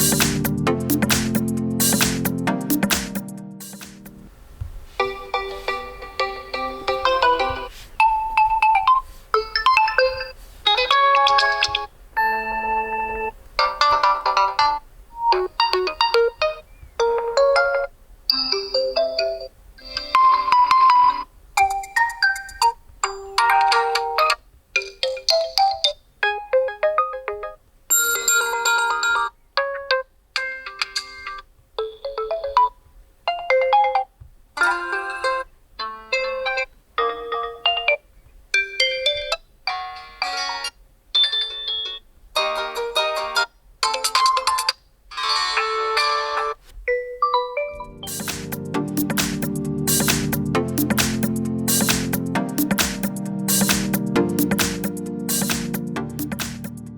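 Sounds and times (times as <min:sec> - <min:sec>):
phone ringtone chiming melodies: 0:08.1 - 0:14.6, 0:26.5 - 0:29.3, 0:45.3 - 0:50.1.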